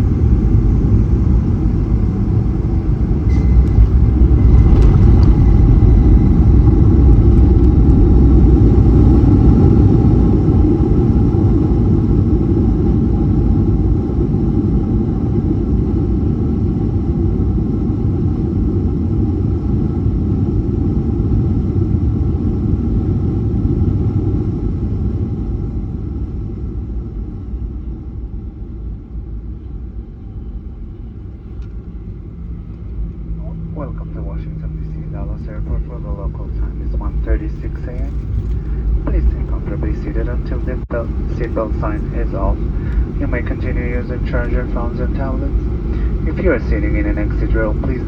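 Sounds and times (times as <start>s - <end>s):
jet engines and wheels rumbling: 0.0s - 48.0s
thin tone: 3.1s - 7.0s.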